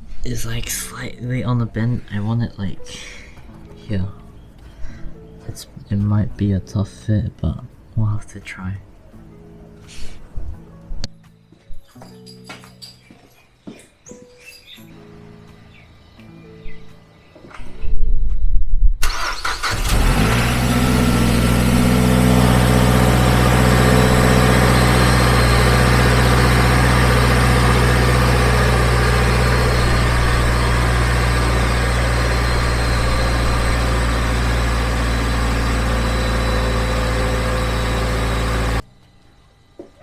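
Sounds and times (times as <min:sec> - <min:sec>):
car engine idling: 0:19.0 - 0:38.8.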